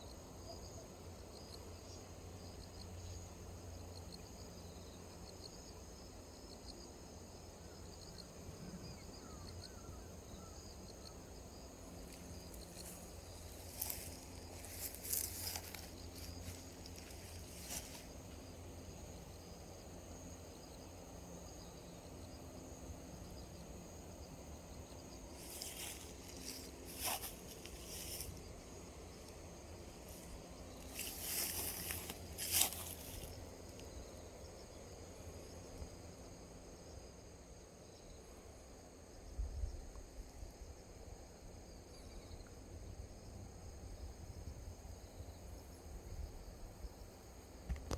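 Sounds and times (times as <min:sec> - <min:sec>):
insect chirring: 0:07.5 - 0:38.2.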